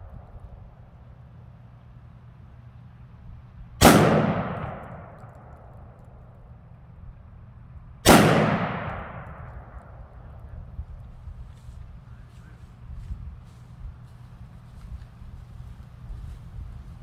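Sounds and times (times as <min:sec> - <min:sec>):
rifle shots with echo: 0:03.8 - 0:06.1, 0:08.0 - 0:10.5.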